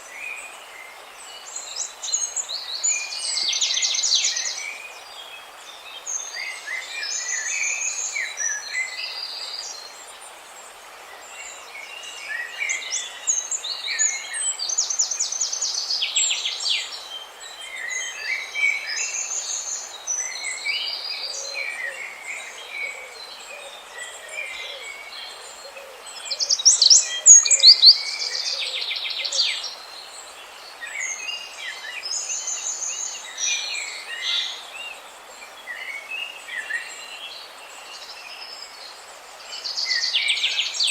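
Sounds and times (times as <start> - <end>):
steady hiss: 0.0 - 40.9
small birds chirping: 12.3 - 40.9.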